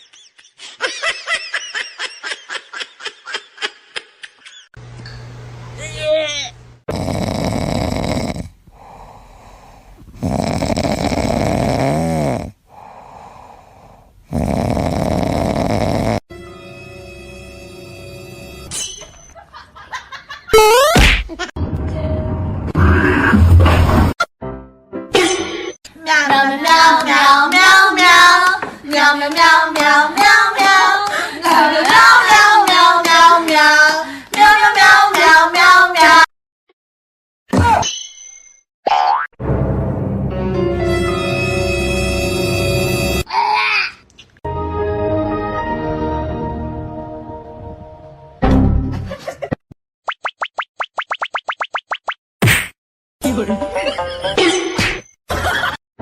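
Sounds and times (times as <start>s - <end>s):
heavy snoring: 6.9s - 16.3s
quiet breaths: 8.4s - 10.2s, 12.6s - 14.3s.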